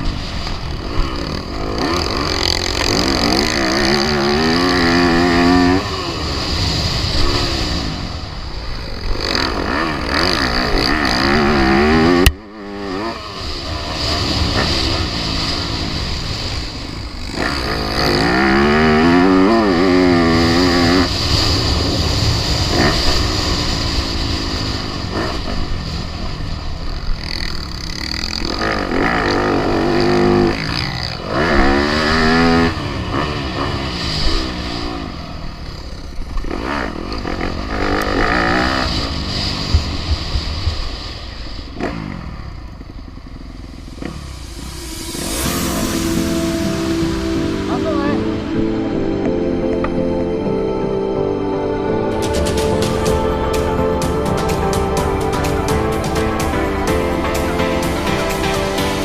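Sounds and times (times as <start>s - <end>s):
motocross bike engines revving: 0.0s - 46.5s.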